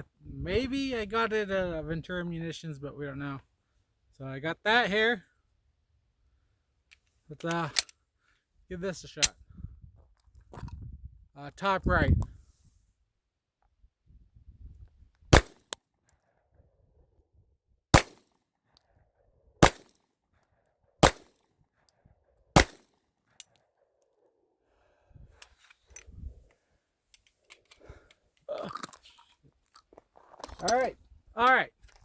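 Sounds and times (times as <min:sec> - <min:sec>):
gun handling clicks: 0:06.9 - 0:08.0, 0:25.4 - 0:28.2, 0:30.4 - 0:30.9
pistol shots: 0:15.3 - 0:15.7, 0:17.9 - 0:18.2, 0:19.6 - 0:19.9, 0:21.0 - 0:21.3, 0:22.6 - 0:22.9.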